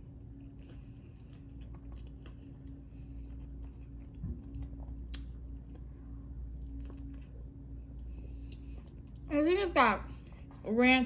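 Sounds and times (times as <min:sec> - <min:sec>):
steady low hum: 0:00.0 - 0:11.0
person chewing: 0:00.2 - 0:09.3
wet mouth clicks and smacks: 0:04.5 - 0:05.9.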